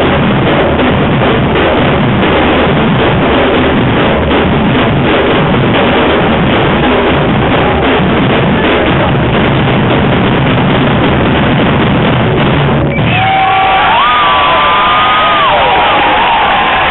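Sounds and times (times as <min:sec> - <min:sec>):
street percussion drumming: 0:00.0 - 0:16.9
crowd cheering and whooping: 0:12.9 - 0:16.9.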